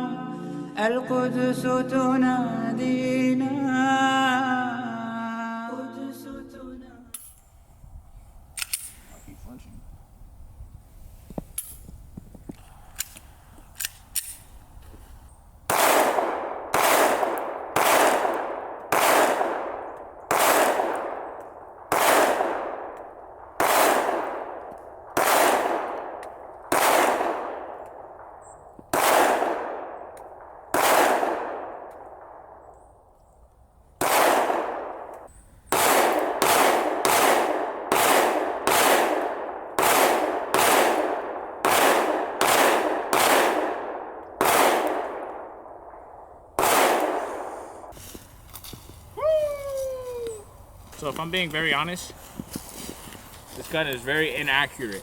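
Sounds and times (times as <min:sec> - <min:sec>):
pistol shots ringing out: 0:15.7 - 0:33.0, 0:34.0 - 0:47.9.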